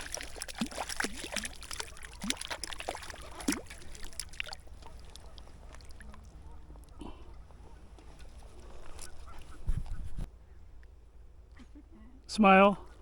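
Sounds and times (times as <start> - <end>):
water splashing and trickling: 0.0 - 10.0.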